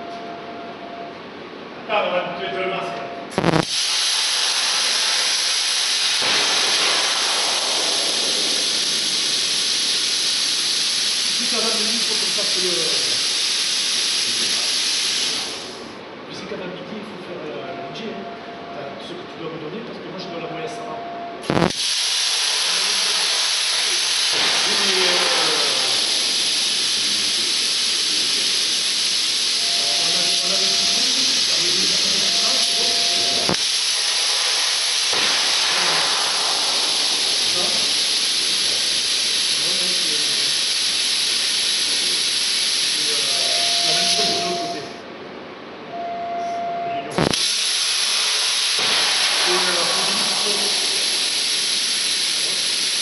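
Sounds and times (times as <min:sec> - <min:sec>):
hiss of rushing air: 0:03.4 - 0:15.9, 0:21.5 - 0:44.8, 0:47.2 - 0:53.0.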